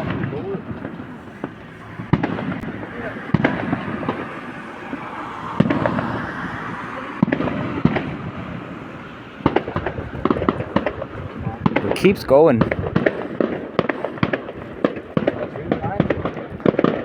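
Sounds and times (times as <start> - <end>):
fireworks bangs: 0.0 - 17.0.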